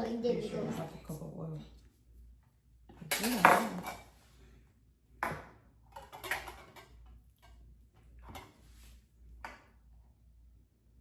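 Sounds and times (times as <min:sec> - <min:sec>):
kitchen utensils clinking: 0:03.0 - 0:04.1, 0:05.9 - 0:07.0.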